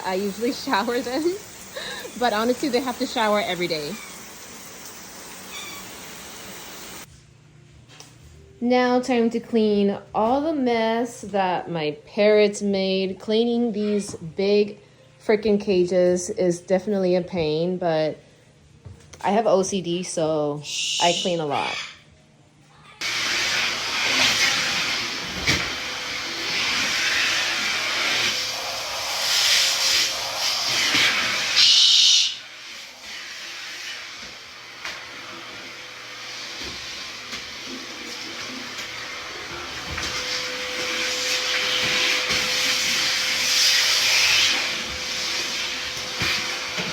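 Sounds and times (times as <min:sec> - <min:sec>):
hissing rush of cage cleaning: 0:00.0 - 0:07.1, 0:23.0 - 0:46.9.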